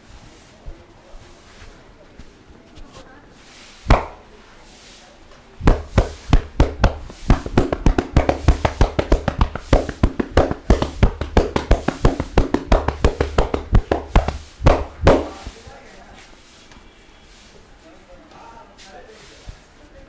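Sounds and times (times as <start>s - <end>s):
hands slapping a head: 3.9s - 4.3s, 5.6s - 15.6s.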